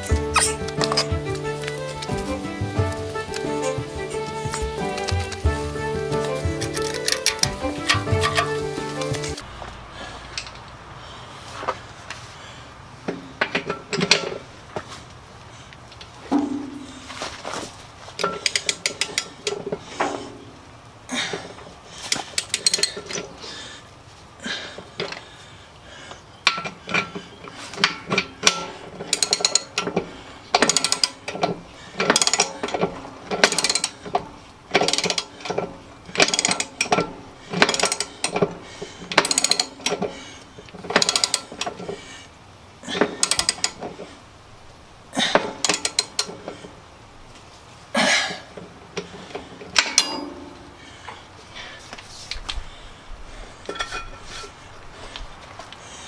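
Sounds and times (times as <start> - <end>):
metallic clanks and clinks: 0.0 - 2.2, 30.6 - 40.2, 49.7 - 50.8, 53.7 - 54.5.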